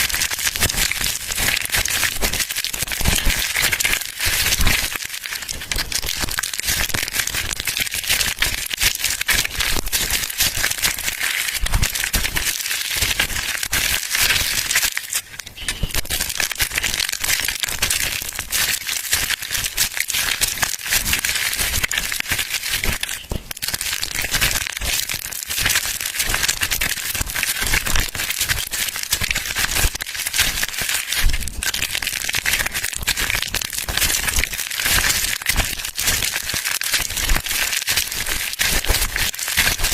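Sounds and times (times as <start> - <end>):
soap crackling and crunching: 0.0 - 39.9.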